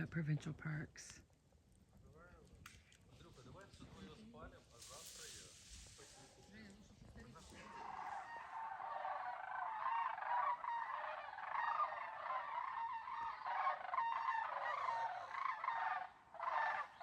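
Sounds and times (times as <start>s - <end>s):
geese honking: 7.3s - 17.0s.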